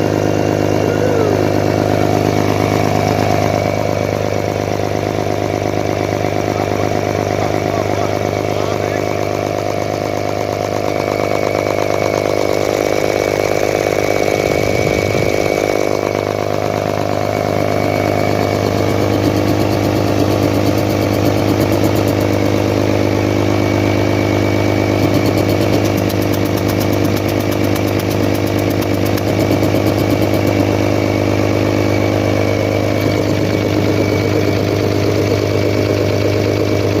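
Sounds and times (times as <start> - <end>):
diesel engine idling: 0.0 - 37.0.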